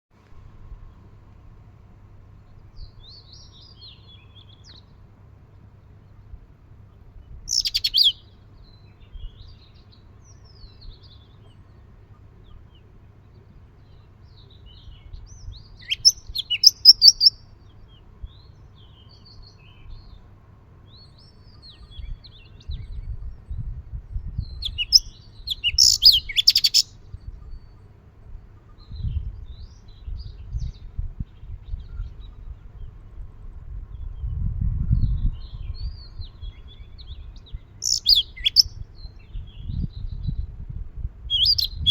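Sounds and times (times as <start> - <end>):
sparrows chirping: 2.2 - 33.2, 33.9 - 40.5, 41.2 - 41.9
low rumble: 27.0 - 37.7.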